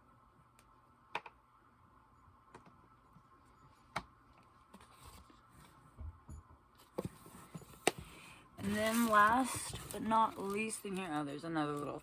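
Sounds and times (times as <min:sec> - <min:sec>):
soft rustling: 0:06.8 - 0:12.0.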